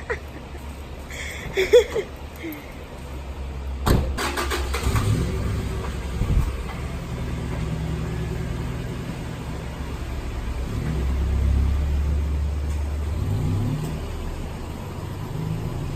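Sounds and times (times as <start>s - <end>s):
car engine starting and running: 2.2s - 15.9s.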